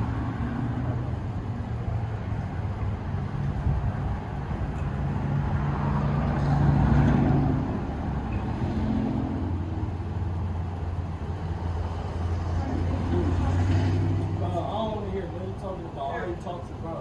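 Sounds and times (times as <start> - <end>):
vehicle passing: 0.0 - 17.0.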